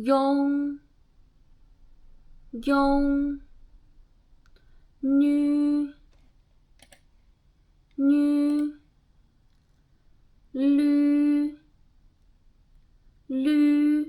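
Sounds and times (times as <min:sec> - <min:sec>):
woman pronouncing syllables: 0:00.0 - 0:00.9, 0:02.5 - 0:03.5, 0:05.0 - 0:06.1, 0:08.0 - 0:08.8, 0:10.5 - 0:11.7, 0:13.3 - 0:14.0.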